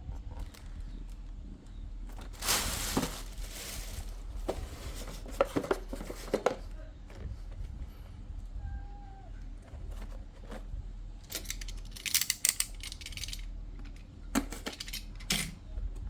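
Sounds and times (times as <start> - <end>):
packaging rustling and tearing: 2.1 - 6.4.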